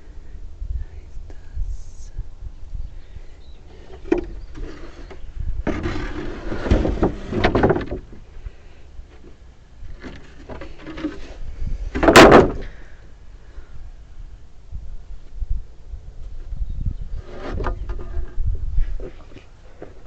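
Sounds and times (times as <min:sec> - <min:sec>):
wooden boards scraping: 0:03.6 - 0:08.4, 0:09.1 - 0:12.8, 0:17.1 - 0:20.0
wooden boards knocking: 0:05.6 - 0:08.2, 0:12.0 - 0:12.7.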